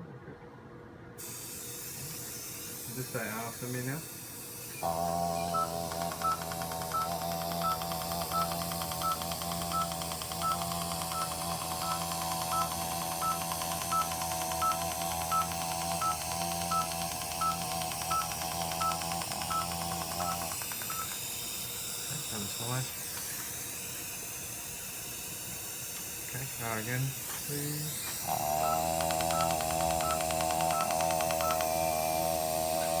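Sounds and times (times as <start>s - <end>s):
laser fine clicking: 4.6s - 23.5s, 25.9s - 32.9s.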